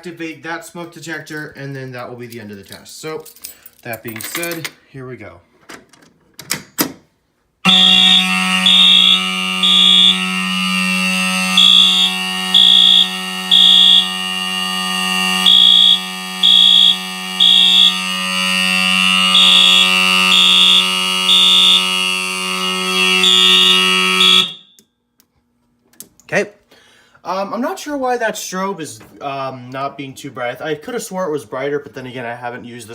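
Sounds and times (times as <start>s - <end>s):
fire alarm horn beeping: 7.6s - 25.0s
fire alarm horn buzzing: 7.6s - 25.0s
click: 24.7s - 25.3s.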